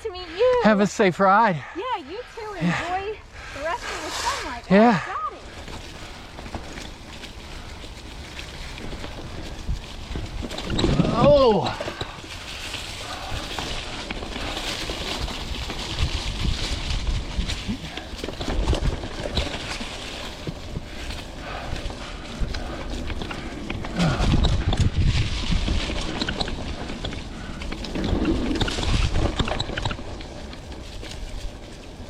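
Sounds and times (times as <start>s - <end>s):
bike rattling over bumps: 0.0s - 32.0s
bike tyre and trail noise: 0.0s - 32.0s
low rumbles: 1.1s - 32.0s.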